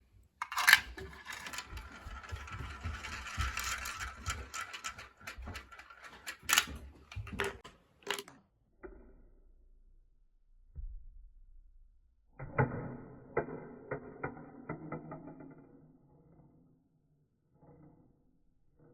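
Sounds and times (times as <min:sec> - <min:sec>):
marbles rattling on plastic run: 0:00.4 - 0:08.2
sharp plastic clacks: 0:00.4 - 0:08.4.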